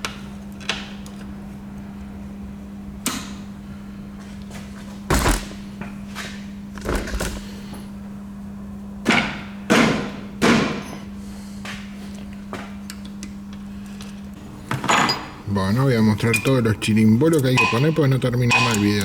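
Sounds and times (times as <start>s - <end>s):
steady low hum: 0.0s - 19.0s
metallic clanks of tools: 17.4s - 19.0s.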